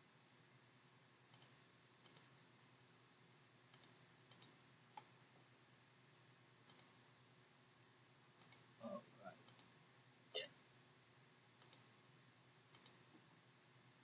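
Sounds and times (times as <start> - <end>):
computer mouse clicks: 1.3 - 2.3, 3.7 - 5.1, 6.7 - 6.9, 8.4 - 8.6, 9.5 - 9.7, 11.6 - 11.9, 12.7 - 13.0.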